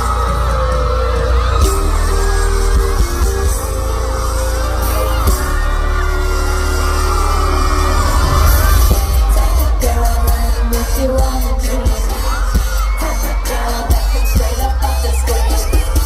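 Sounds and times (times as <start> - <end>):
crowd whooping and yelling: 0.0 - 16.0
pop music over loudspeakers: 0.0 - 16.0.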